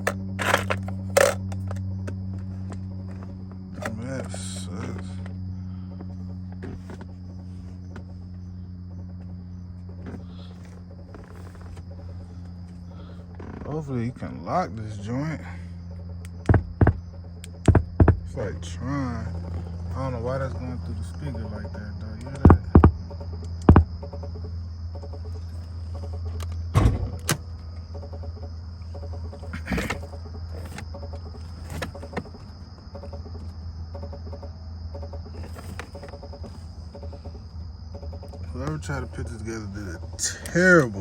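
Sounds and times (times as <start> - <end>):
electrical hum from speakers: 0.0 - 41.0
electronic chirping: 15.2 - 26.8, 27.4 - 32.1.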